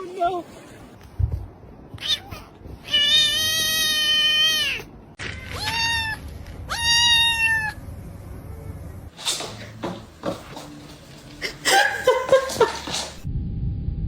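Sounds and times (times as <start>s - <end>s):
cat meowing: 2.0s - 7.8s.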